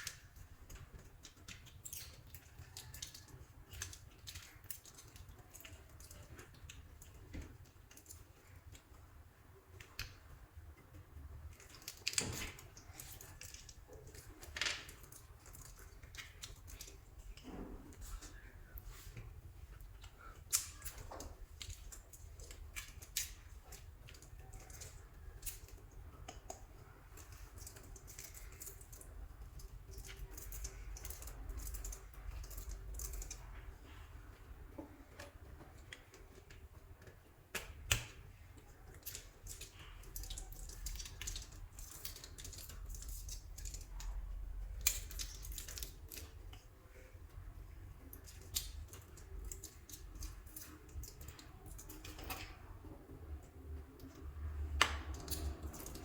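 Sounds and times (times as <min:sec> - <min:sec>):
hands squeezing soft clay: 0:00.0 - 0:56.0.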